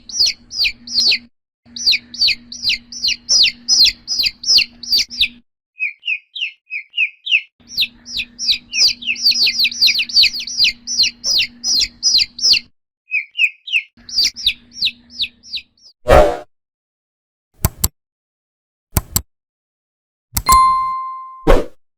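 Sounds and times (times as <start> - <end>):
chick peeping: 0.0 - 15.8.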